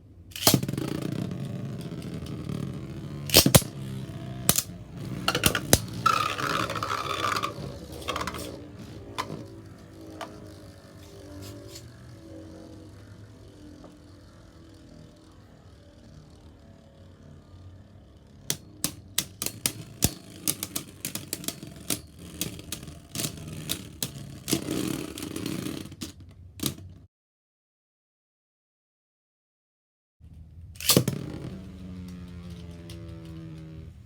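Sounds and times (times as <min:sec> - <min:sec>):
spinning tops whirring: 0:00.3 - 0:26.0, 0:30.8 - 0:34.0
plastic tops clacking together: 0:00.4 - 0:10.5, 0:18.5 - 0:26.8.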